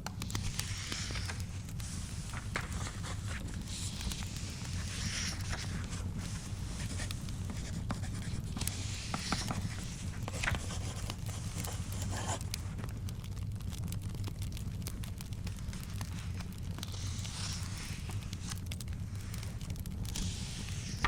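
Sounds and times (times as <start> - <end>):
paper rustling: 0.0 - 12.9, 15.4 - 21.0
fire crackling: 0.0 - 21.0.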